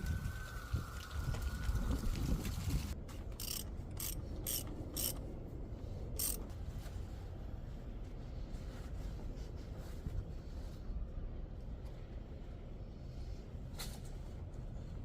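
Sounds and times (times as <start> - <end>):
low steady rumble: 0.0 - 15.0
ratchet wrench clicking: 3.3 - 5.2, 6.2 - 6.5.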